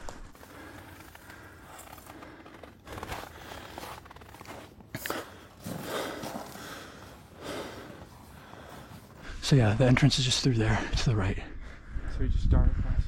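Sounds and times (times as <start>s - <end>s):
footsteps on snow: 0.0s - 9.4s.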